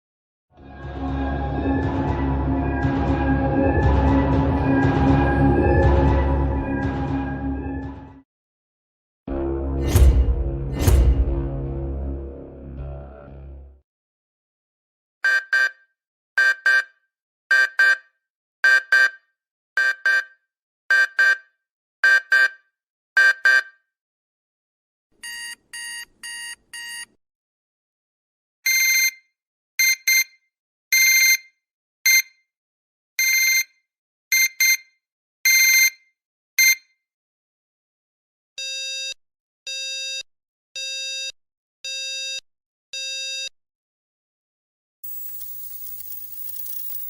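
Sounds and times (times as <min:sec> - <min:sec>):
digital alarm clock beeping: 0:28.7 - 0:29.2, 0:29.8 - 0:30.4, 0:31.0 - 0:31.5, 0:33.2 - 0:33.7, 0:34.3 - 0:34.9, 0:35.5 - 0:36.0, 0:36.6 - 0:36.9, 0:43.0 - 0:43.5, 0:45.0 - 0:47.0.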